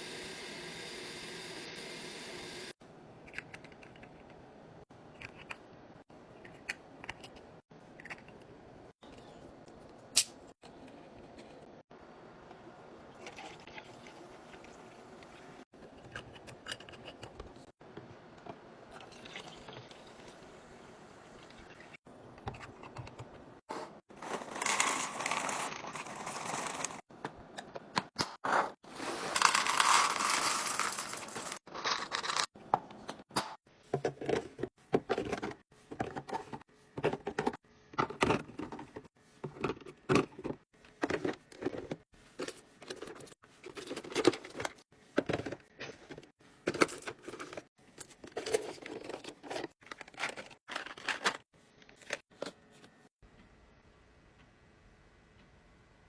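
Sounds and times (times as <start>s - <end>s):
items clicking and tapping: 6.4s - 8.5s, 15.8s - 18.6s, 22.3s - 23.5s, 24.2s - 53.0s
plastic packaging crinkling: 24.1s - 27.0s, 28.9s - 32.5s.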